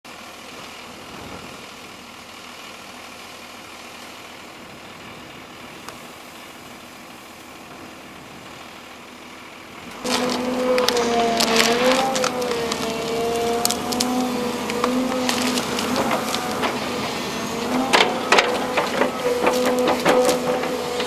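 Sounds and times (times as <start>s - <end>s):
excavator diesel engine: 0.0s - 21.0s
wavering engine whine: 0.5s - 21.0s
roots cracking: 9.9s - 21.0s.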